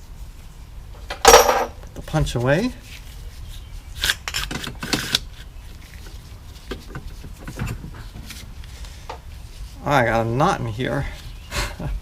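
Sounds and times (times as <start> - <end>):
handling clicks and knocks: 1.0 - 1.9.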